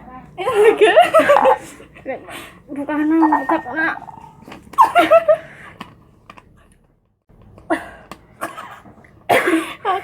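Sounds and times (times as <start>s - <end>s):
person coughing harshly: 8.4s - 9.8s.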